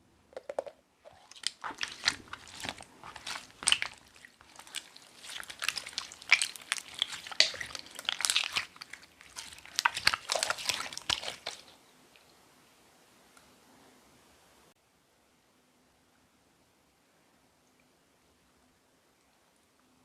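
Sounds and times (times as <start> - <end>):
slime squished by hand: 1.1 - 11.8.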